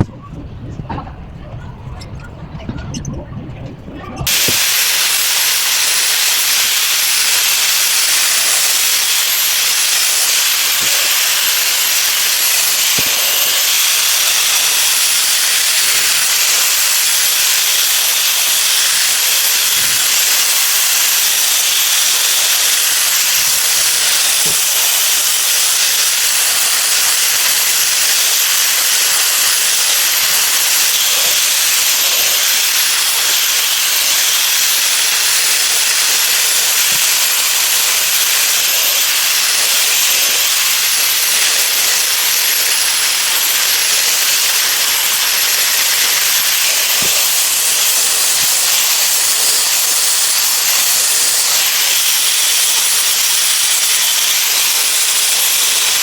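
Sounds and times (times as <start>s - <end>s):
loud steady hiss: 4.2s - 56.0s.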